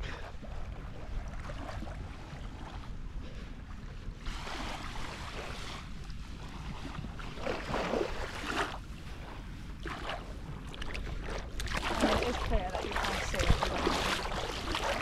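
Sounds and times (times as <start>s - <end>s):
small waves washing on shore: 0.0s - 15.0s
wind buffeting microphone: 0.0s - 15.0s.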